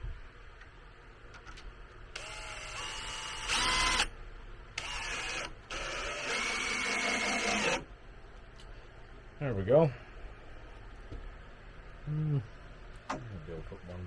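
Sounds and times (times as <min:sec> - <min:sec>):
power drill driving screw into wood: 0:02.2 - 0:04.1, 0:04.8 - 0:07.8.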